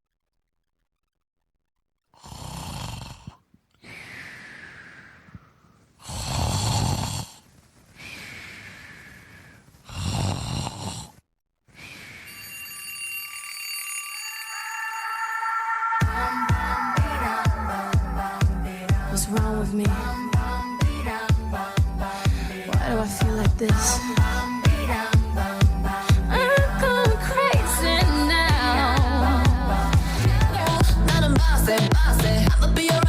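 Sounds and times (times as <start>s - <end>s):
snoring with whistling breath: 2.2s - 11.2s
electronic alarm tone: 12.3s - 18.9s
music: 15.9s - 33.0s.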